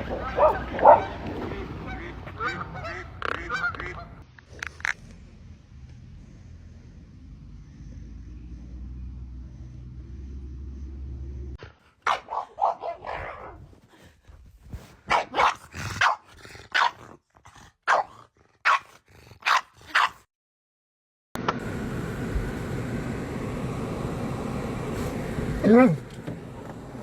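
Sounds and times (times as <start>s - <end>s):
dog barking: 0.0s - 1.2s, 12.0s - 13.6s, 15.1s - 17.0s, 17.9s - 20.3s.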